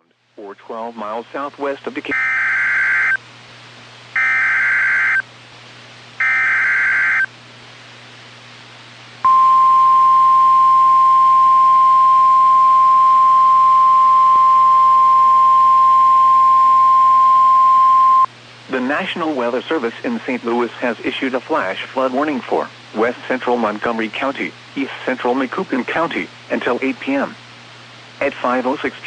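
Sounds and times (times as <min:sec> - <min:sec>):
steady warning alarm tone: 0:02.1 - 0:03.2, 0:04.2 - 0:05.2, 0:06.2 - 0:07.3, 0:09.2 - 0:18.3
buzzy digital data screeches: 0:06.2 - 0:07.3.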